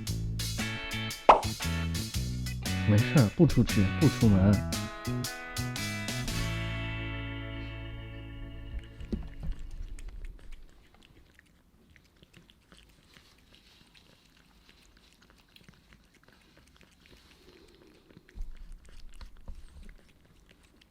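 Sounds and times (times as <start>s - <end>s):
low handling rumble: 6.2s - 10.4s
cat chewing wet food: 8.6s - 20.9s.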